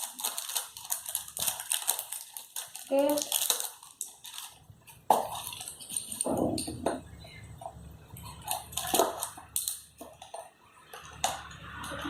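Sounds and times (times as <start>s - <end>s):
packaging rustling: 0.0s - 6.8s, 8.1s - 11.3s.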